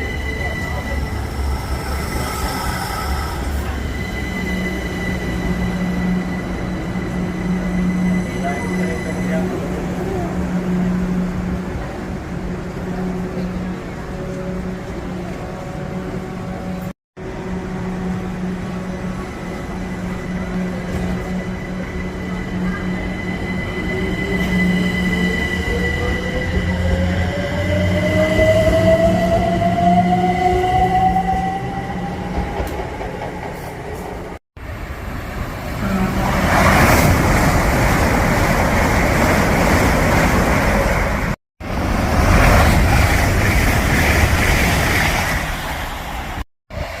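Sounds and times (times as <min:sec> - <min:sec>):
high-pitched squeal: 0:00.0 - 0:09.8
train rumbling with high whine: 0:00.0 - 0:47.0.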